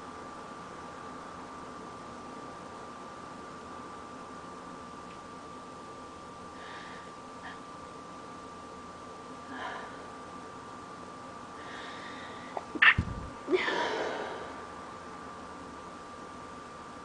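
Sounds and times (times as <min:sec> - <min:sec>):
person sneezing: 0:12.6 - 0:14.4.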